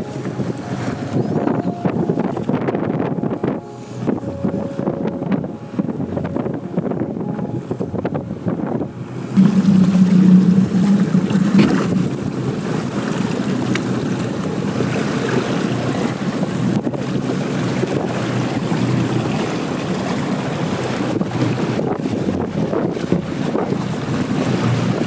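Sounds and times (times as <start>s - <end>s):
boat engine hum: 0.0s - 25.0s
wind buffeting microphone: 0.0s - 25.0s
water rushing past: 9.2s - 25.0s.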